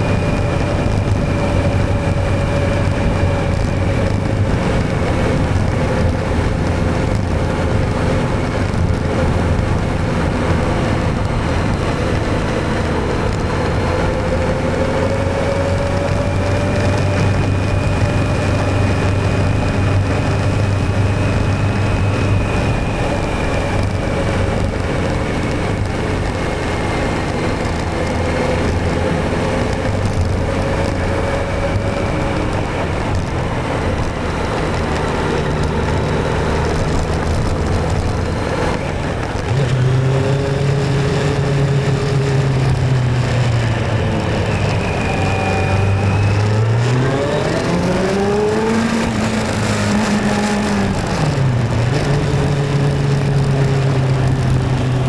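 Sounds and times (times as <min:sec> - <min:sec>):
motorcycle engine running: 0:00.0 - 0:55.0
road and wind noise: 0:00.0 - 0:55.0.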